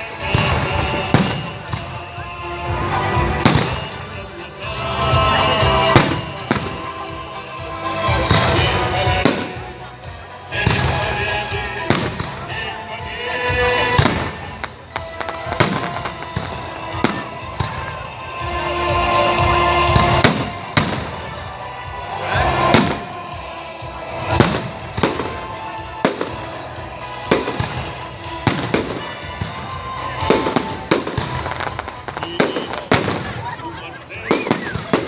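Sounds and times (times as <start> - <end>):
music playing: 0.0 - 35.0
fireworks bangs: 0.1 - 7.2, 11.8 - 12.7, 13.4 - 35.0
fireworks crackle: 14.0 - 18.2, 22.6 - 35.0.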